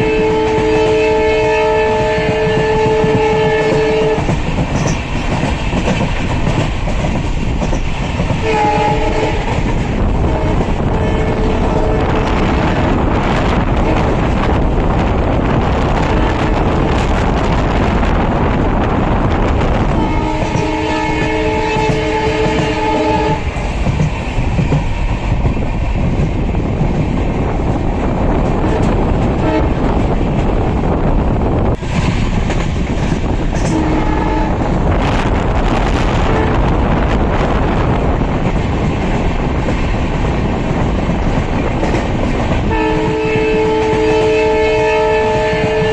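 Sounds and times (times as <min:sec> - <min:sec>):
diesel locomotive horn: 0:00.0 - 0:04.4, 0:08.4 - 0:13.1, 0:13.8 - 0:14.3, 0:15.9 - 0:17.0, 0:19.7 - 0:23.6, 0:28.5 - 0:30.0, 0:33.6 - 0:35.2, 0:35.8 - 0:36.9, 0:42.6 - 0:45.9
moving train noise: 0:00.0 - 0:45.9.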